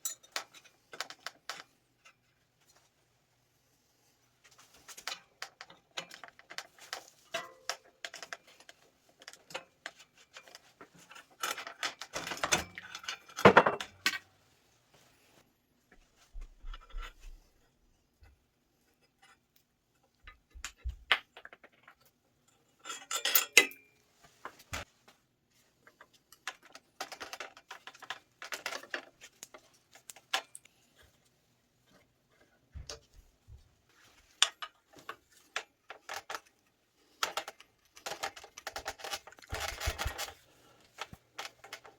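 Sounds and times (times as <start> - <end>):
metal tools clinking and clanking: 22.8 - 23.9.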